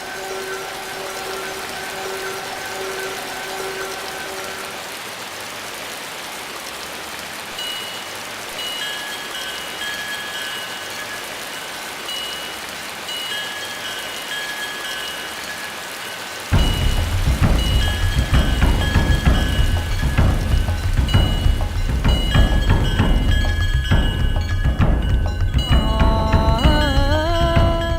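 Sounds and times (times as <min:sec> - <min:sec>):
high chime-like notes: 0:00.0 - 0:04.8, 0:07.6 - 0:27.9
rain-like hiss: 0:00.0 - 0:27.9
loud low rumble: 0:16.6 - 0:27.9.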